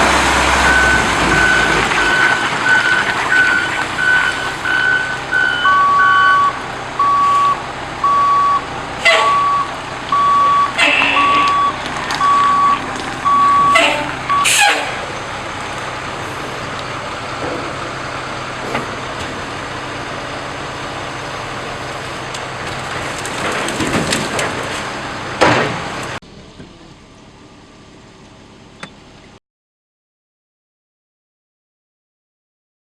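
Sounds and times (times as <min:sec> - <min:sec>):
truck reversing alarm beeps: 0:00.0 - 0:23.6
truck engine running: 0:00.0 - 0:29.4.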